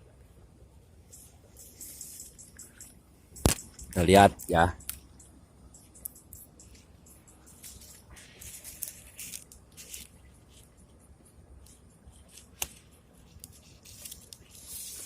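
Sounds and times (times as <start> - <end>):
faint rustling and scraping: 1.1 - 3.0, 6.6 - 15.0
sharp click: 3.4 - 5.1.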